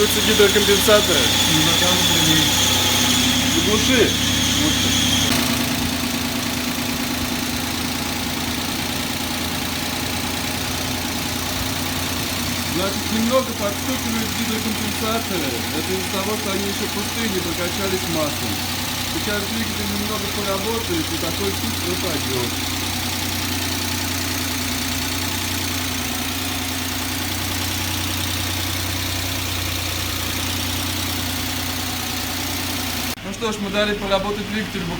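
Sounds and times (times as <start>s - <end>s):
high thin tone: 0.0s - 5.5s
ticking hydraulic lifters: 0.0s - 32.4s
engine idling: 0.0s - 34.9s.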